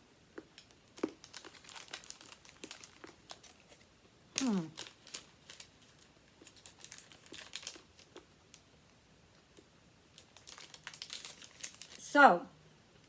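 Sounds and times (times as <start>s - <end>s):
wrapper crinkling: 0.5s - 8.6s, 10.1s - 12.1s.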